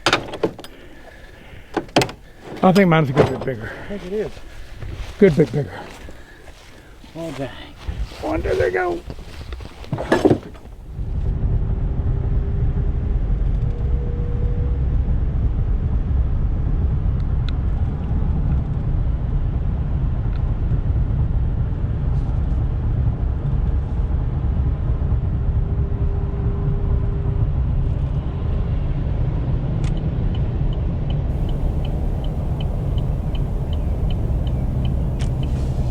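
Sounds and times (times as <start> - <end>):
vehicle engine and road rumble: 0.0 - 19.5, 29.6 - 35.9
fast light ticking: 31.4 - 35.9.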